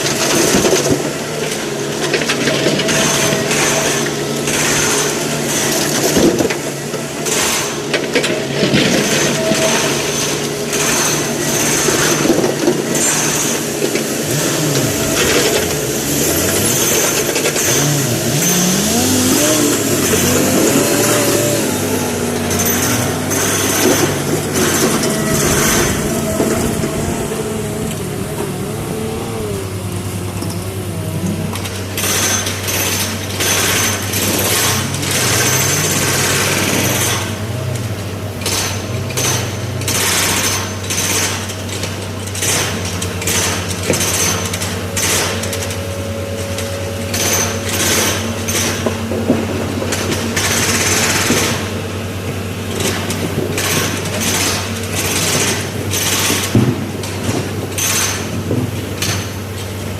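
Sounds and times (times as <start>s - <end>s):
excavator diesel engine under load: 0.0s - 59.9s.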